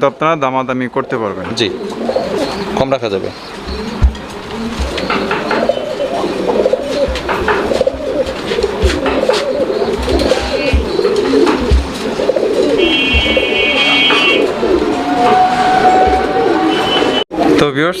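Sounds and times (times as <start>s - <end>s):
pigeons cooing: 1.0s - 17.6s
soft knocks: 3.6s - 14.6s
high steady tone: 12.8s - 17.2s.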